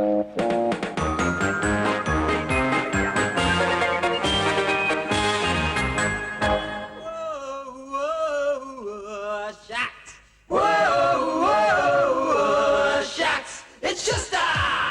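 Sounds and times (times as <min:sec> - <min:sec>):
men singing held notes: 0:10.5 - 0:14.3.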